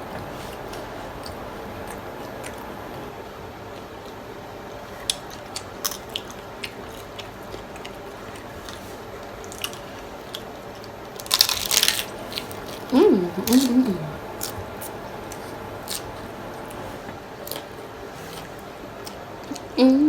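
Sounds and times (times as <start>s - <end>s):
close chewing: 0.0s - 3.1s, 3.7s - 19.8s
crunchy bite into taco shell: 11.1s - 12.9s
person humming: 12.8s - 14.3s, 19.5s - 20.0s.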